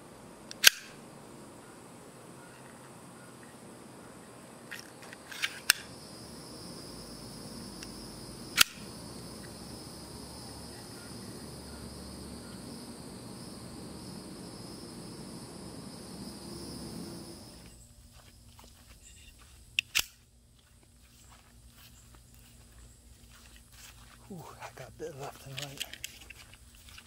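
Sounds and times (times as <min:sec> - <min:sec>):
knife spring action snapping: 0:00.5 - 0:01.0, 0:08.6 - 0:08.9, 0:19.8 - 0:20.1
high-pitched whine: 0:05.8 - 0:17.8.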